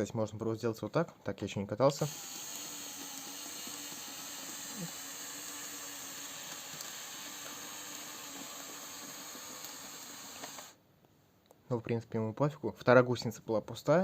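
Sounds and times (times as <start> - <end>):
electric motor whirring: 2.0 - 10.8.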